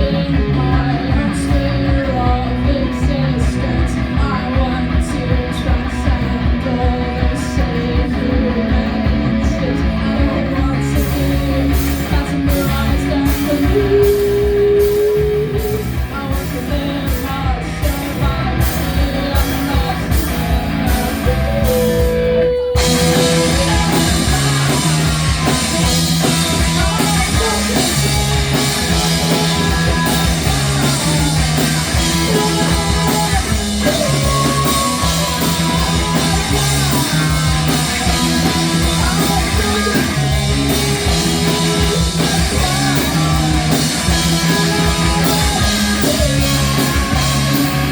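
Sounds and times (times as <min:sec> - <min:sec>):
live rock band playing: 0:00.0 - 0:47.9.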